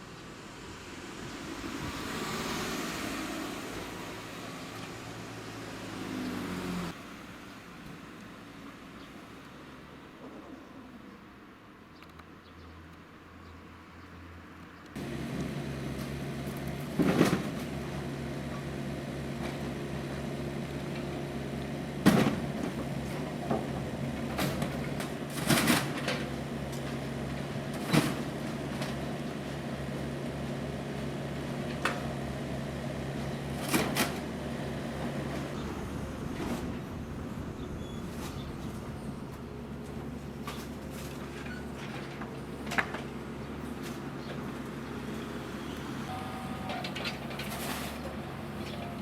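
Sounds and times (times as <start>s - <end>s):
low mechanical hum: 15.0s - 49.0s.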